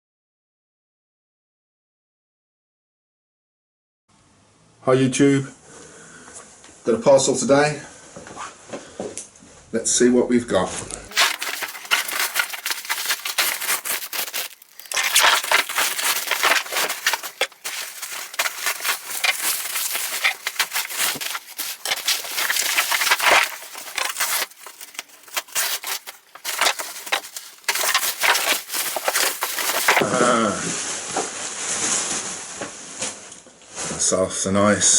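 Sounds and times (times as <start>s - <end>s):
packaging wrap crinkling and tearing: 11.1s - 30.0s.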